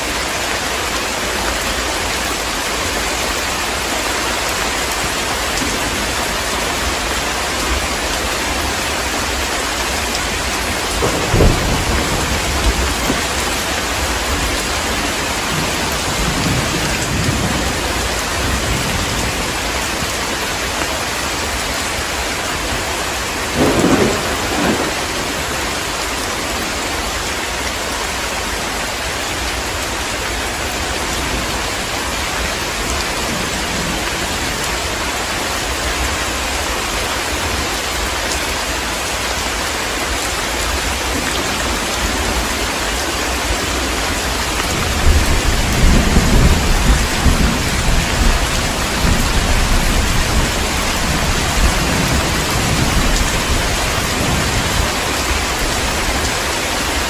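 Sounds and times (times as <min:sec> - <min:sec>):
heavy rain: 0:00.0 - 0:57.0
thunder rumbling: 0:08.9 - 0:20.3, 0:22.7 - 0:26.7, 0:43.6 - 0:57.0.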